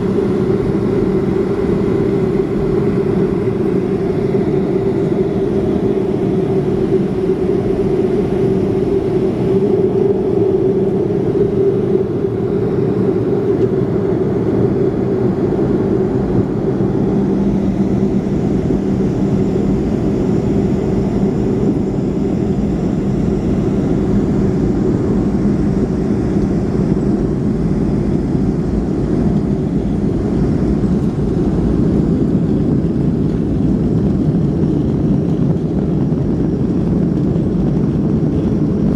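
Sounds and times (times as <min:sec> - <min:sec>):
jet engines droning in cabin: 0:00.0 - 0:38.9.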